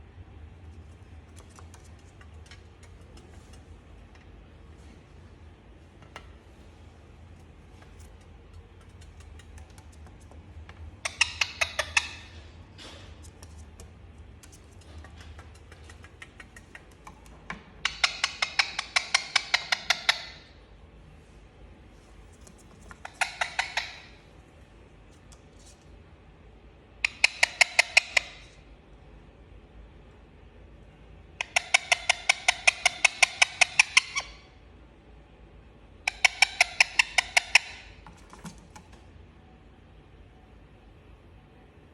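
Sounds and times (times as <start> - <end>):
parakeet calling: 11.0 - 12.4, 22.9 - 24.2, 36.1 - 37.9.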